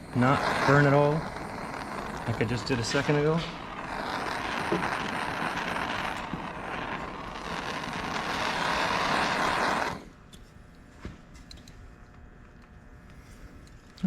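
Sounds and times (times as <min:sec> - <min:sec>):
heat tool blowing hiss: 0:00.0 - 0:10.2.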